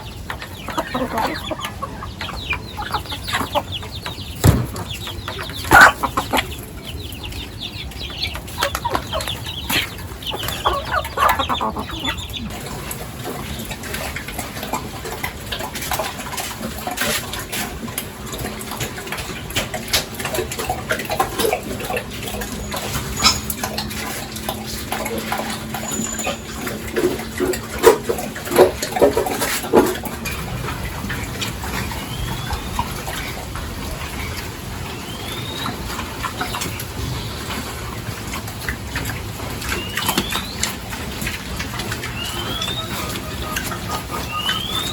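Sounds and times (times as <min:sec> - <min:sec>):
chickens clucking: 0:00.0 - 0:44.9
sharp knocks: 0:04.4 - 0:05.1.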